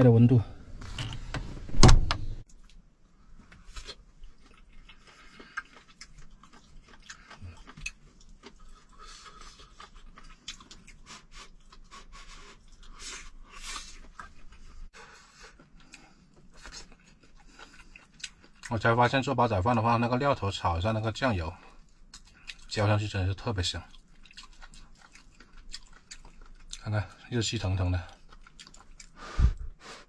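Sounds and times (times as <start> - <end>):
loud thump: 1.6 - 2.4
person eating and chewing: 3.6 - 18.8, 21.6 - 22.8, 23.8 - 27.3, 28.0 - 30.0.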